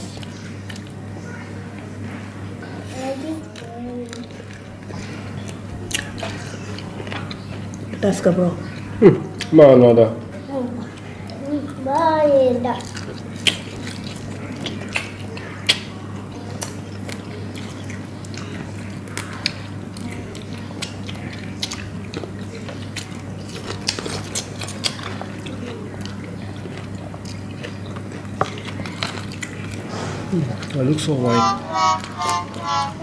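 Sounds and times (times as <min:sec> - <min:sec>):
people chewing food: 0:00.0 - 0:33.0
low hum: 0:31.3 - 0:33.0.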